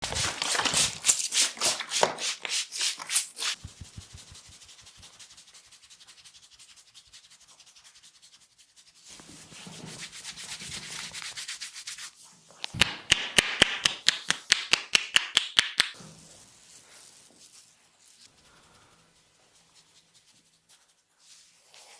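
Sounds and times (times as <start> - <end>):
hands rubbing hair: 1.4 - 9.0, 10.1 - 16.0
rapid sharp slaps on head: 12.6 - 16.0.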